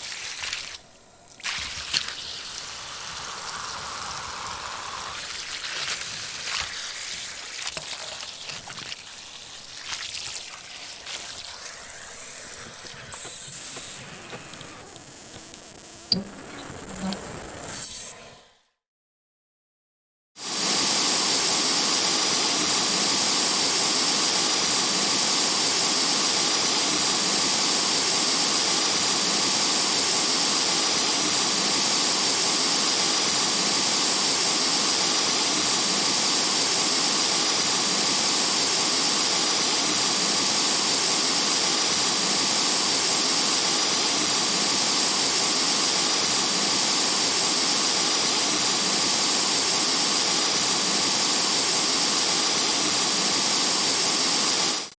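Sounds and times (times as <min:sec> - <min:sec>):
water rushing from hose: 0:00.0 - 0:13.7.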